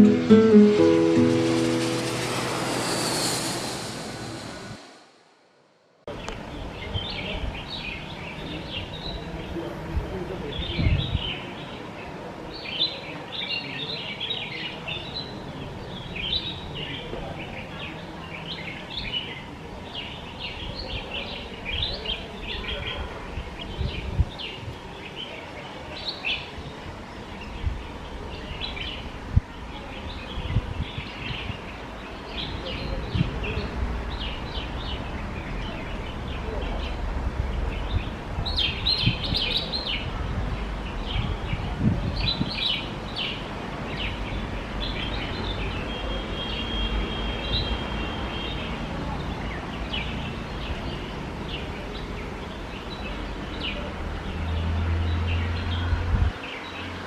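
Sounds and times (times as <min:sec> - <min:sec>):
low rumble: 0:00.6 - 0:06.0.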